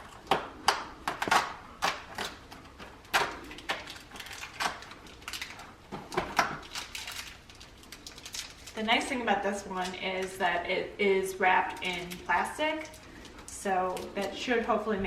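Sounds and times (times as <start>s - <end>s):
cardboard and plastic crinkling: 0.0s - 10.4s.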